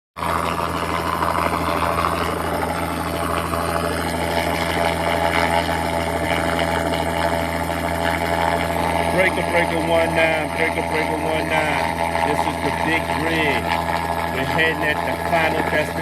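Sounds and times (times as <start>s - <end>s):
steady engine drone: 0.2s - 16.0s.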